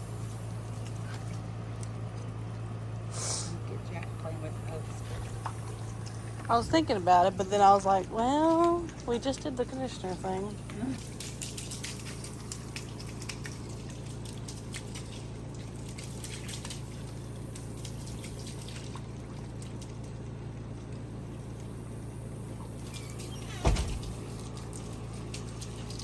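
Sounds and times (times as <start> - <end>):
water splashing from a hose: 0.0 - 26.0.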